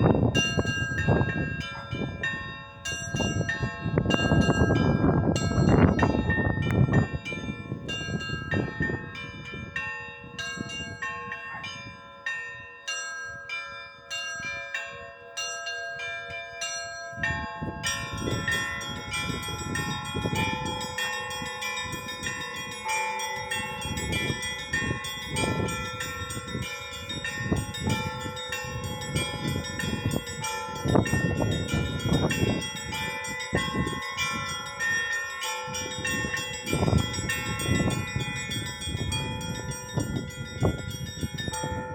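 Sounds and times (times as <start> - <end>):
church bells ringing: 0.0 - 41.9.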